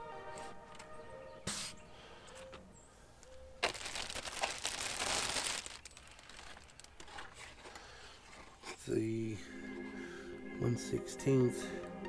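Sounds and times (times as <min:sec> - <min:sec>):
plastic packaging crinkling: 0:03.6 - 0:07.8.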